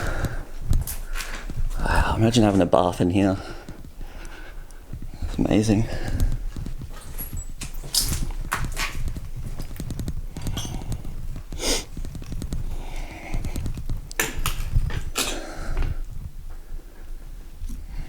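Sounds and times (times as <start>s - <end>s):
steady low rumble: 0.0s - 8.5s
crunching steps: 0.0s - 16.6s
footsteps on a floor: 3.6s - 14.0s.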